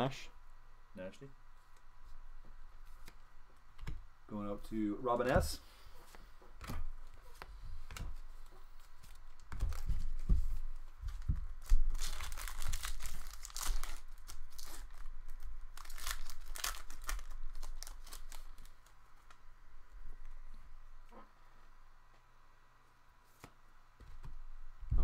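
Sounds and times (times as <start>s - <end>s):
card pack wrapper tearing: 11.6s - 18.8s.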